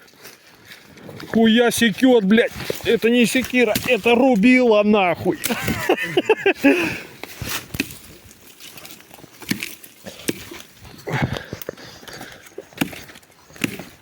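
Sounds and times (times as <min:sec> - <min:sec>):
hatchet chopping dry wood: 0:03.5 - 0:04.1, 0:09.3 - 0:11.7, 0:12.7 - 0:14.0.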